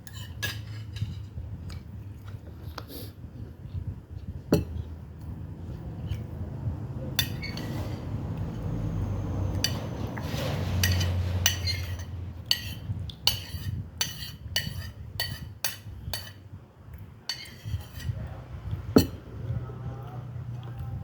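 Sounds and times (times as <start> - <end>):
cutlery clinking and scraping on plate: 0.0 - 1.4, 7.1 - 8.6, 9.6 - 16.4, 17.2 - 18.2, 18.9 - 19.2.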